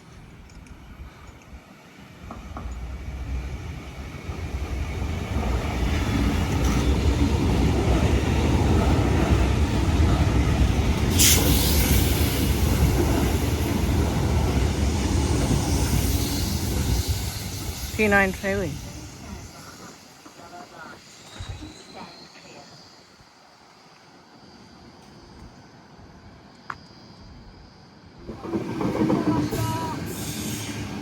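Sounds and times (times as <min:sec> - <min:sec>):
electric train rumbling past: 0:00.0 - 0:31.0
sharp hiss: 0:10.3 - 0:25.6, 0:29.5 - 0:31.0.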